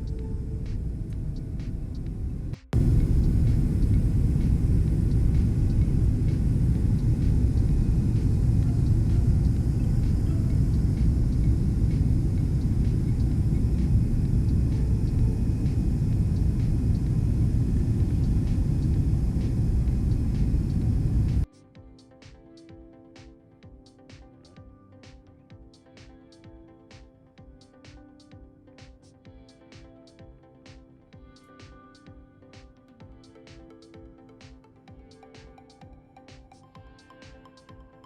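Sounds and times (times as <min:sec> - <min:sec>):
airliner cabin low rumble: 0:00.0 - 0:21.5.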